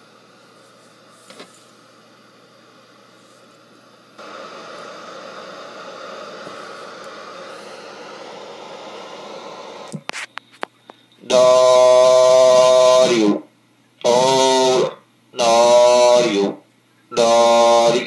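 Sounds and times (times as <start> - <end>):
loud steady tone: 0.0 - 10.6, 11.2 - 18.0
radio static hiss: 0.0 - 18.0.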